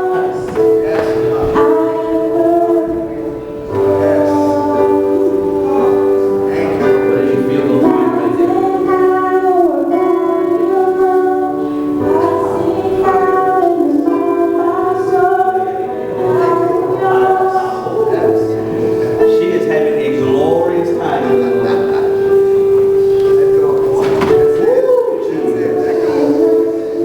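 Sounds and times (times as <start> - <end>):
instrumental accompaniment: 0.0 - 27.0
voices singing slow notes: 0.0 - 27.0.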